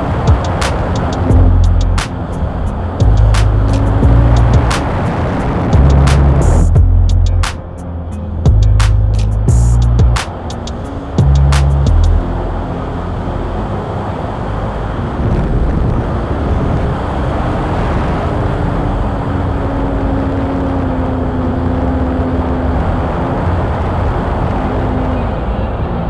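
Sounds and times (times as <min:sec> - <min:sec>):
air rushing over microphone: 0:00.0 - 0:07.7.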